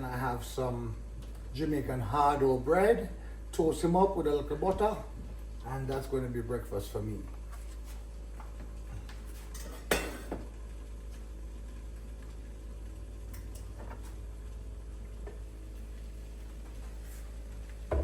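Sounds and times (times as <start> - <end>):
steady low hum: 0.0 - 18.0
dishes clattering: 9.5 - 10.4.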